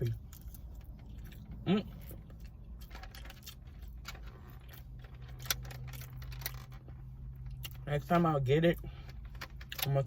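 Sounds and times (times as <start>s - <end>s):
person chewing: 0.0s - 6.7s, 7.3s - 7.8s.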